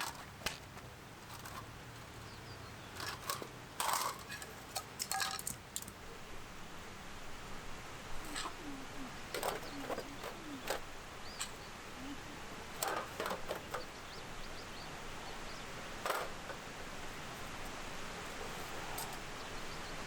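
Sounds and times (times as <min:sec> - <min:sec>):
sharp clicks and knocks: 0:16.0 - 0:16.6.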